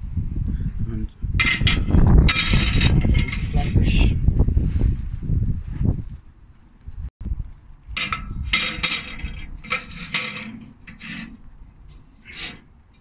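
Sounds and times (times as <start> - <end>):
metal plates scraping on grill rack: 1.4 - 4.0, 8.0 - 13.0.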